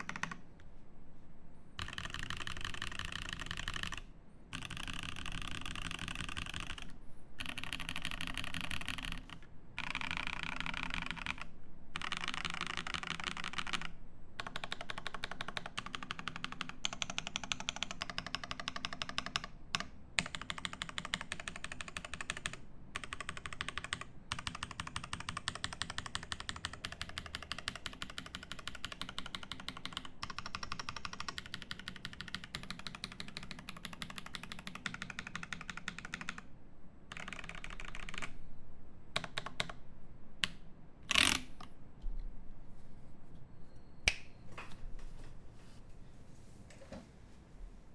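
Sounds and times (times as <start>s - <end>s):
fast typing on mechanical keyboard: 0.0s - 0.4s, 1.8s - 36.5s, 37.1s - 38.4s, 39.2s - 39.8s, 41.1s - 41.5s.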